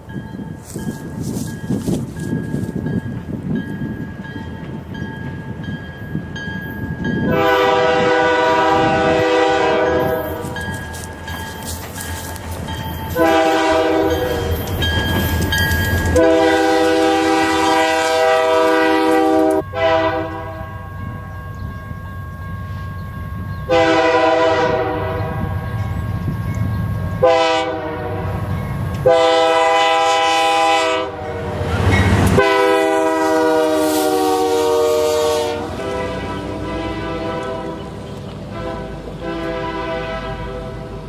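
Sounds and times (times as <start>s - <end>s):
diesel locomotive rumbling: 0.0s - 41.0s
locomotive air horn blasts: 7.3s - 10.7s, 13.2s - 14.6s, 16.1s - 20.8s, 23.7s - 25.6s, 27.2s - 31.7s, 32.3s - 41.0s.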